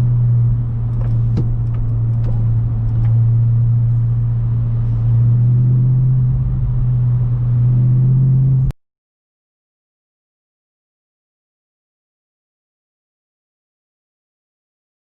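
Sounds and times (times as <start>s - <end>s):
car engine droning: 0.0s - 8.8s.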